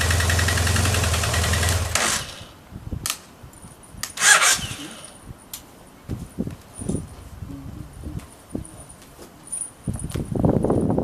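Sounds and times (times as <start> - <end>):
motorcycle engine idling: 0.0 - 2.0.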